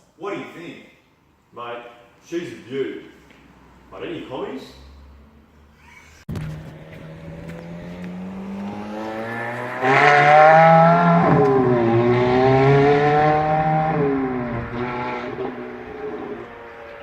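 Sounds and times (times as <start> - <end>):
car engine revving: 6.3 - 17.0.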